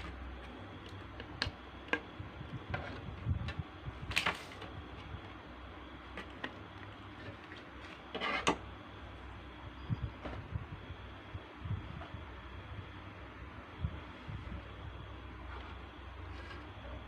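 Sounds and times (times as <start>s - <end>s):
faint low hum: 0.0s - 17.0s
rustling scrape: 7.1s - 8.6s, 15.4s - 16.9s.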